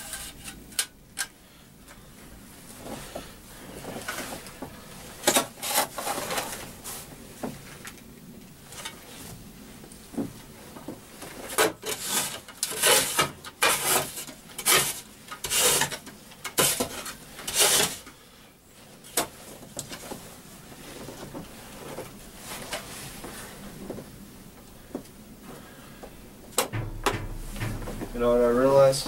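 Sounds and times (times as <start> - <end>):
faint rustling: 20.0 - 29.0.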